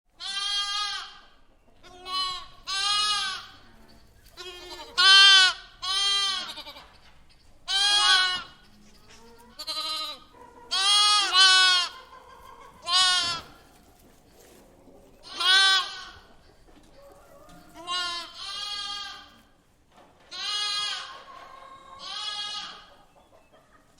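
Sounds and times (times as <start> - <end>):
lamb bleating: 0.2 - 3.6, 4.3 - 6.9, 7.7 - 8.6, 9.5 - 12.0, 12.8 - 13.6, 15.3 - 16.2, 17.8 - 19.4, 20.3 - 21.1, 22.0 - 22.9.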